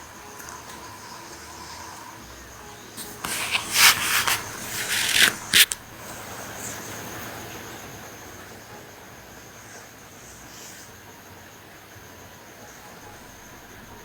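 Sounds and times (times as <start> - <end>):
harsh rasping breaths: 0.4 - 5.8.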